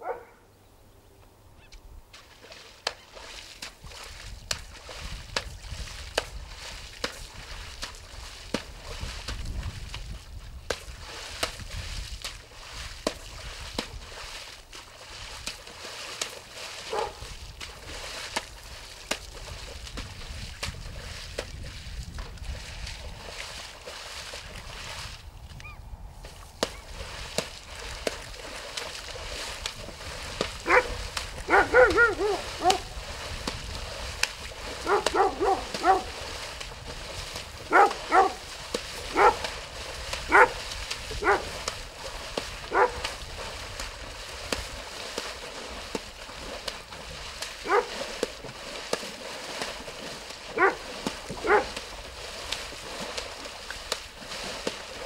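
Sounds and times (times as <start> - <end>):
dog barking in high yips: 0.0 - 0.4, 31.5 - 32.8, 34.8 - 36.1, 37.7 - 38.4, 40.3 - 40.5, 50.6 - 50.8, 51.4 - 51.7.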